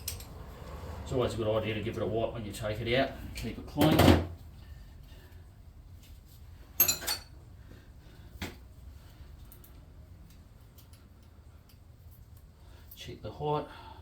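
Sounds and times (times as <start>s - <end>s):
metal tools clinking: 6.8s - 7.3s.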